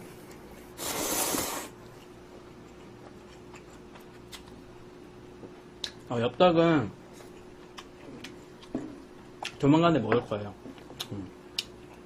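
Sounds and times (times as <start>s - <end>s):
steady low hum: 0.0s - 12.0s
person slurping noodles: 0.8s - 1.8s.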